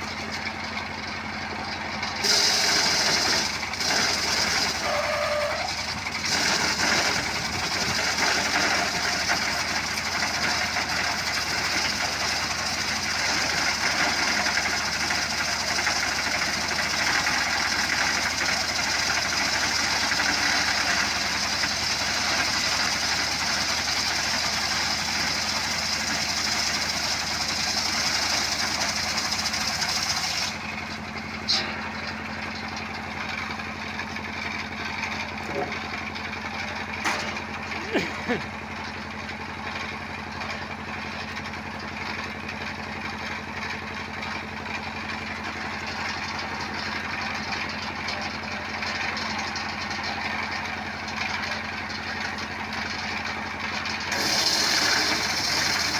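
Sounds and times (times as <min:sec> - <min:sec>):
engine-driven saw hissing: 0:02.2 - 0:32.7, 0:53.8 - 0:55.9.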